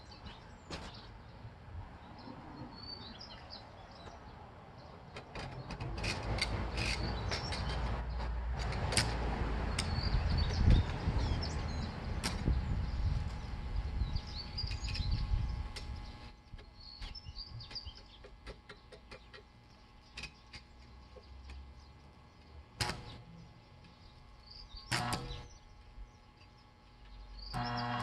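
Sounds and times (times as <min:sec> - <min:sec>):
birds chirping: 0:00.0 - 0:06.1, 0:09.7 - 0:28.0
sharp clicks and knocks: 0:05.1 - 0:11.0, 0:17.6 - 0:19.5.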